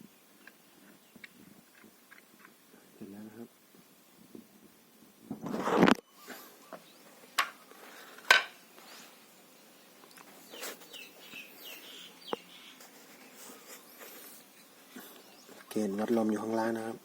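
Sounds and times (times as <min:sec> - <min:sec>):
faint bird chirps: 0:06.0 - 0:07.4, 0:08.8 - 0:16.6.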